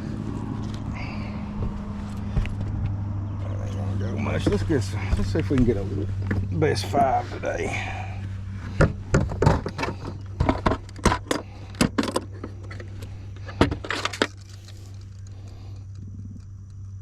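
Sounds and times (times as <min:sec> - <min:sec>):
steady low hum: 0:00.0 - 0:17.0
sharp clicks knocks and rattles: 0:08.6 - 0:17.0.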